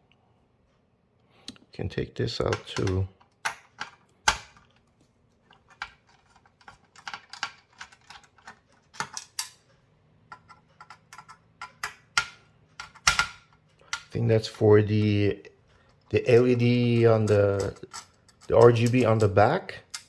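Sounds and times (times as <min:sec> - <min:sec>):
plastic parts clicking and tapping: 0:02.4 - 0:14.2, 0:15.7 - 0:20.0.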